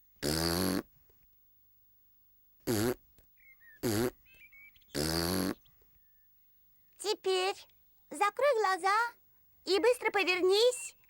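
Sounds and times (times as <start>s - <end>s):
faint bird chirps: 3.3s - 8.2s.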